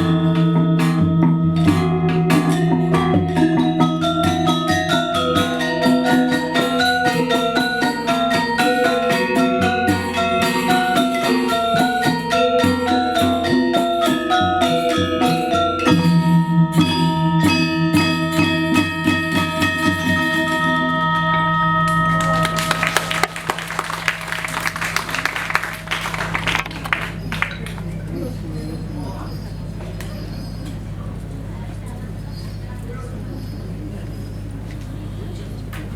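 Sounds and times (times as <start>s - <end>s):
low gong ringing: 0.0s - 27.1s
gamelan metallophones playing: 0.0s - 27.8s
audience applause: 22.1s - 28.0s.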